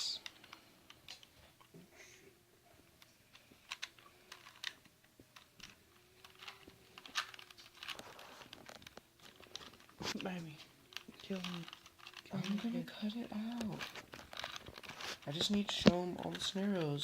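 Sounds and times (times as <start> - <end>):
plastic puzzle cube clicking: 3.3 - 17.0.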